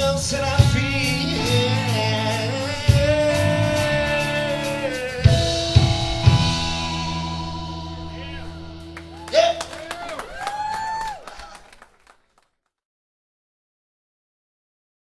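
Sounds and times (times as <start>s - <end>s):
person singing: 0.0s - 9.6s
guitar: 0.0s - 11.0s
bass: 0.0s - 11.8s
sharp drum hits: 5.3s - 9.2s.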